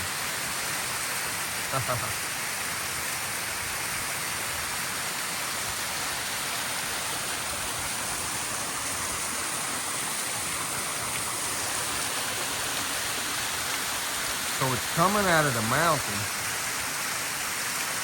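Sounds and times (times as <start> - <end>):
waterfall rushing: 0.0 - 18.0.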